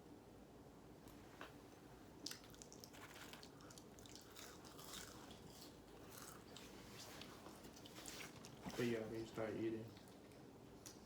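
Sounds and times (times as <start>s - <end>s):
crunching and chewing fried chicken: 2.1s - 8.8s.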